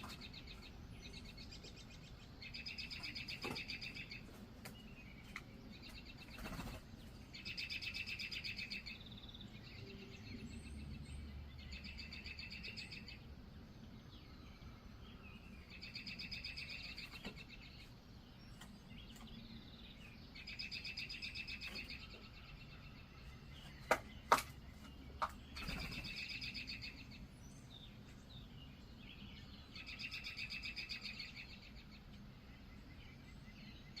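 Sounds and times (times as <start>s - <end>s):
songbird trilling: 25.0s - 31.9s.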